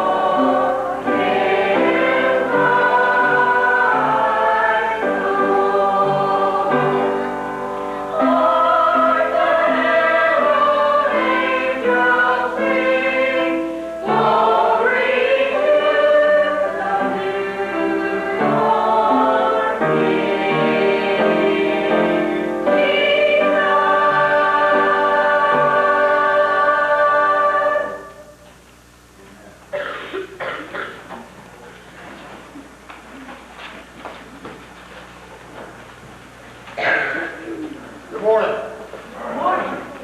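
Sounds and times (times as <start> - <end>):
choir singing a hymn: 0.0 - 28.4.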